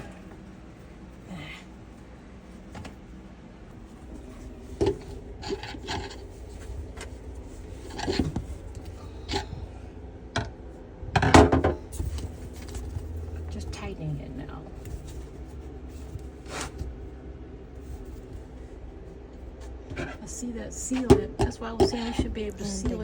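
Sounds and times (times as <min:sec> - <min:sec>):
drain fitting rubbing and scraping: 0:03.8 - 0:09.8.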